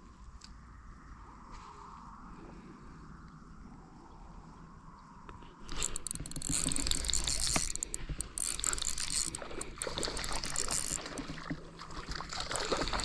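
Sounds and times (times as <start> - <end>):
fishing reel clicking and whirring: 5.7 - 11.4.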